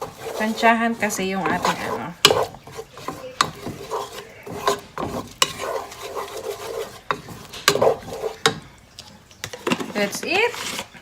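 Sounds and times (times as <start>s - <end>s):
utensil scraping sauce in pan: 0.0s - 8.8s, 9.5s - 11.0s
utensil knocking against pan: 1.4s - 8.6s.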